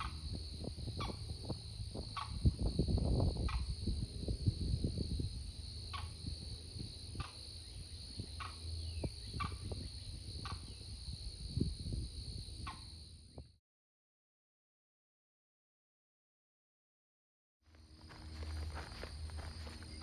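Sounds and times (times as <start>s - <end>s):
high insect drone: 0.0s - 13.5s, 17.7s - 20.0s
footsteps on a trail: 17.7s - 20.0s.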